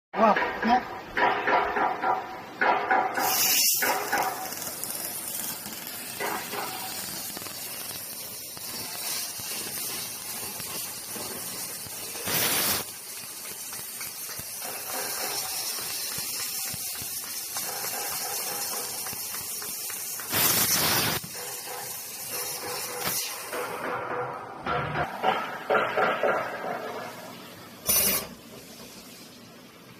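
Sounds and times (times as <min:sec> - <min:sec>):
machine hissing: 0:02.9 - 0:24.1, 0:25.1 - 0:29.7.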